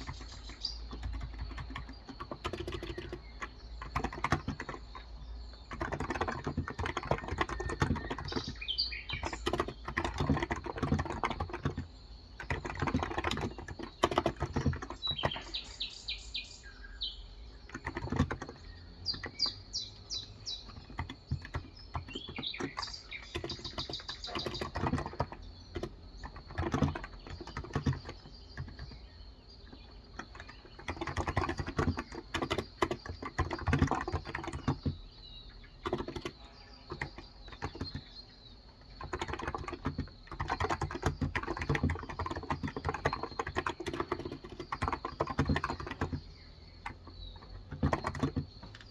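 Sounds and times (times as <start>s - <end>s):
keyboard typing: 0.0s - 15.9s, 17.5s - 48.9s
small birds chirping: 0.0s - 48.9s.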